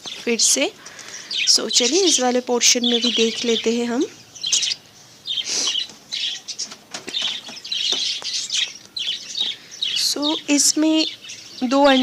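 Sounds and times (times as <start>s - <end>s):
budgerigars chirping: 0.0s - 12.0s
wings fluttering: 5.7s - 9.6s.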